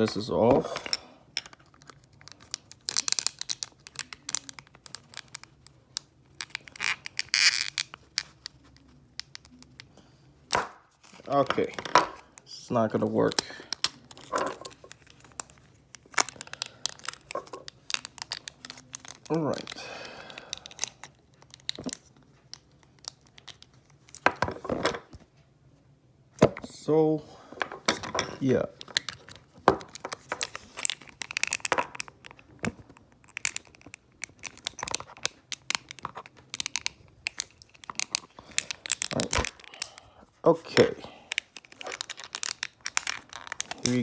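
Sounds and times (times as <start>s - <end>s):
plastic crackling: 0.0s - 25.2s, 27.5s - 44.0s
plastic and cardboard crinkling: 0.0s - 25.4s, 27.4s - 44.0s
packaging rustle: 10.9s - 24.7s, 27.6s - 44.0s.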